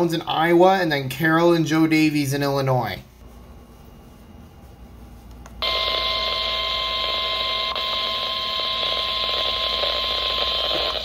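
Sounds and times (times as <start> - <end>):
radio static hiss: 5.6 - 11.0
steady alarm tone: 5.6 - 11.0.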